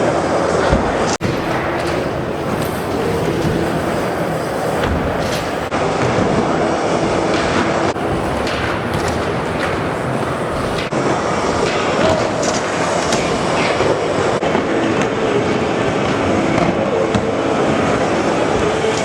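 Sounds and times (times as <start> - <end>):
wheels clacking over joints: 1.2 - 5.7, 8.0 - 10.9
wheels rolling on concrete: 1.2 - 5.7, 7.9 - 10.9.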